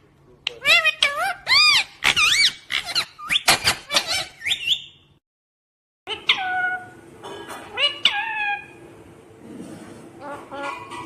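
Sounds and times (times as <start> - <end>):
parrot chirping and squawking: 0.4 - 5.1, 6.1 - 7.0, 7.6 - 8.8, 10.2 - 11.0.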